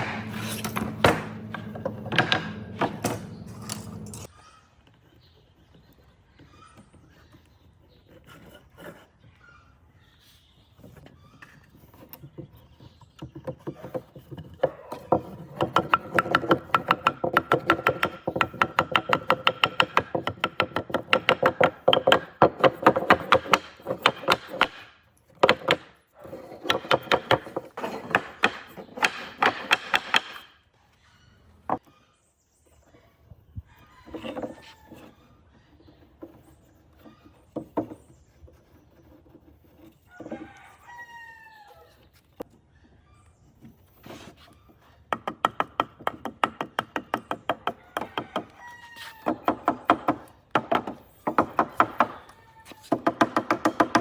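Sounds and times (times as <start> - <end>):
rapid knocking on wood: 13.4 - 24.8, 26.6 - 30.5, 49.3 - 52.2, 52.9 - 54.0.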